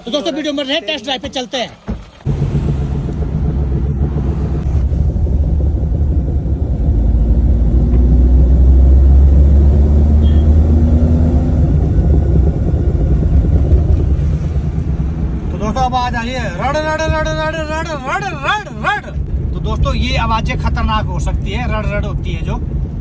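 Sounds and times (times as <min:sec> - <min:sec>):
car rumbling and rattling: 0:00.0 - 0:23.0
faint rising engine note: 0:02.3 - 0:18.0.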